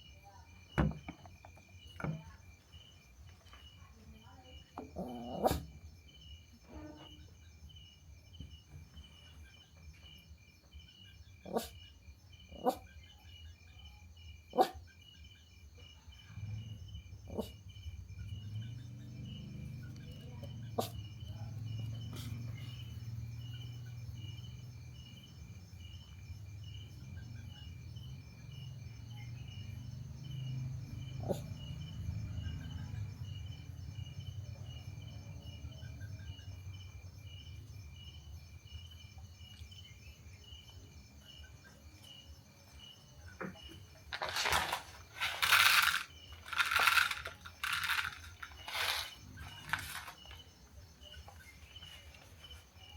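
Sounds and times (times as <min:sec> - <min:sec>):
insects chirping: 0:00.0 - 0:52.9.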